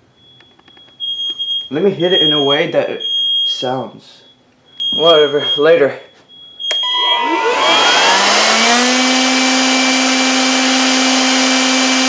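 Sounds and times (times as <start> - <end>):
electric fan motor hissing: 7.0 - 12.0.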